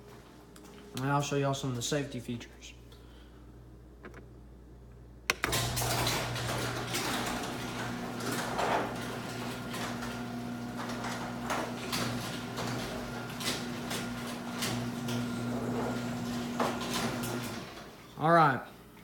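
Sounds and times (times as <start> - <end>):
garage door opener click: 5.3 - 18.0
garage door motor humming: 5.3 - 18.1
garage door rattling: 5.5 - 17.9.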